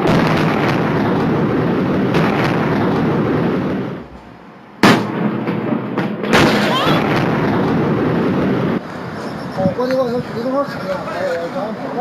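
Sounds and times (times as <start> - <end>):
loud explosion blast: 0.0 - 8.8
loud dense rumbling: 0.0 - 9.2.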